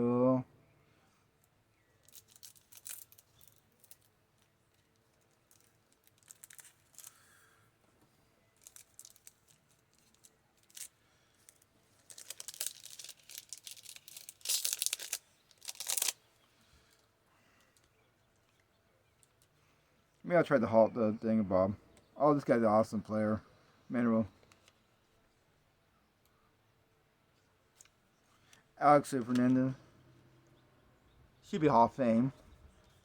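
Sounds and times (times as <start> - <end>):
wrapper tearing and crinkling: 2.0 - 7.3, 8.6 - 16.2.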